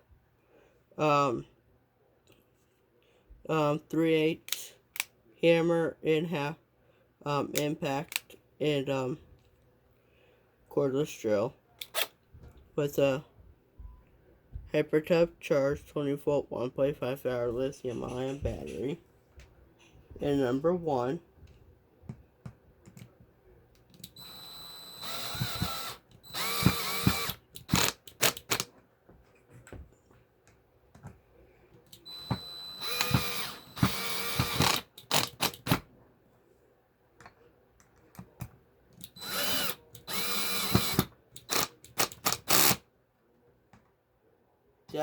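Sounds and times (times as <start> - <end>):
cordless drill driving screws: 24.0 - 28.7, 31.9 - 35.8, 39.0 - 42.8.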